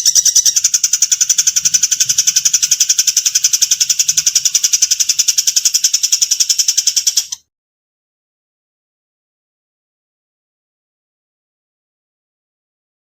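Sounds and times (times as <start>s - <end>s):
songbird rattling trill: 0.0s - 7.4s.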